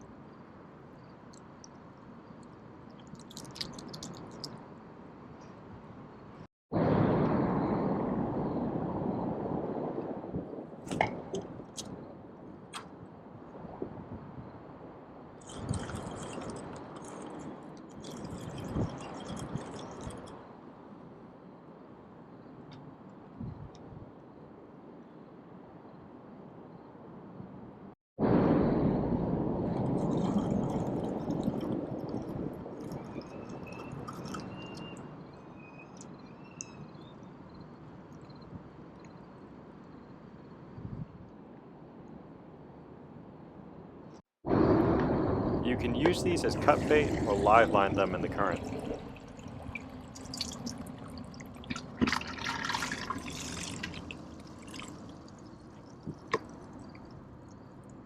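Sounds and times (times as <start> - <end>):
water sloshing and splashing: 2.9 - 4.7, 15.4 - 20.4, 46.0 - 58.0
faint high chirps: 33.1 - 39.2.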